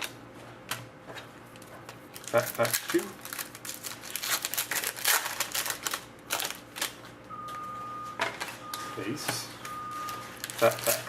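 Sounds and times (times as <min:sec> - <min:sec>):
wrapper crinkling and cards rustling: 0:01.5 - 0:07.2, 0:10.0 - 0:11.0.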